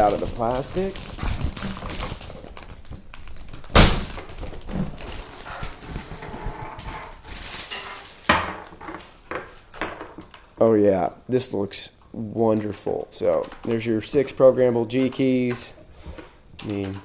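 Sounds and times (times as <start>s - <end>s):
plastic wrapping crinkling: 0.0s - 10.6s.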